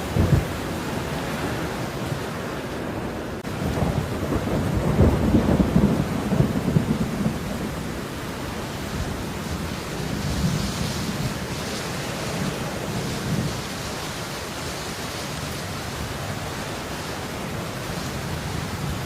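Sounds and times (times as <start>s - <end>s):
thunder rumble: 0.0s - 14.2s
steady falling rain: 0.0s - 19.0s.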